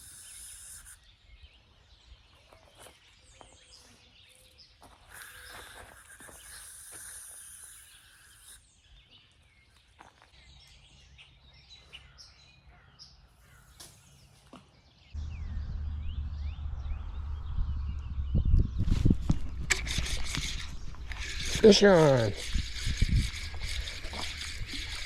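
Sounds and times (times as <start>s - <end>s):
insect hiss: 0.0s - 1.0s
small birds chirping and whistling: 0.0s - 14.4s
low rumble of wind on microphone: 15.2s - 25.0s.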